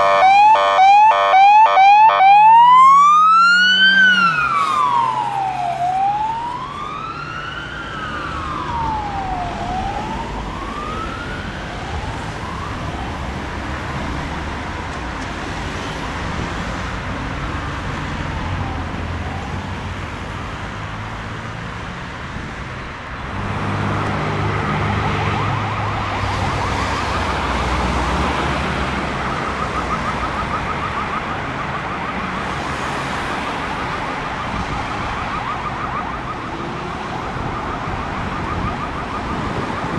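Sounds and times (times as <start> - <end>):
siren yelping: 0.0 - 14.9, 24.2 - 39.9
siren wailing: 0.0 - 15.0, 24.0 - 39.9
road traffic hum: 0.0 - 39.9.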